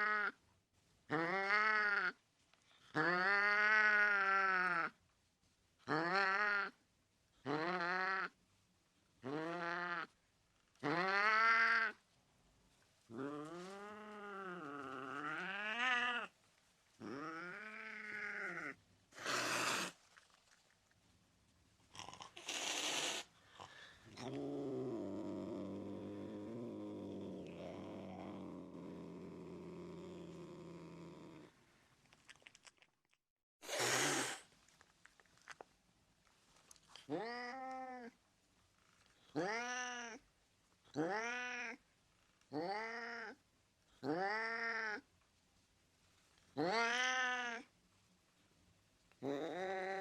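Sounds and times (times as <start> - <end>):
cat hissing: 17.0 - 20.1, 22.0 - 25.4, 33.6 - 34.5
cat purring: 21.8 - 32.5
cat yowling: 46.6 - 47.7.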